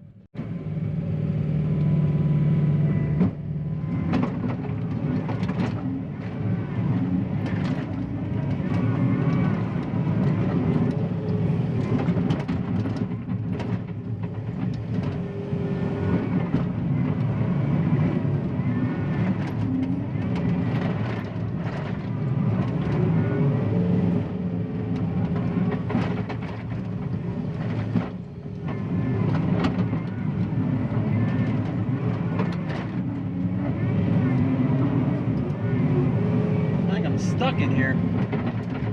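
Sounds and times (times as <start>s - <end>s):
diesel engine under load: 0.0s - 38.9s.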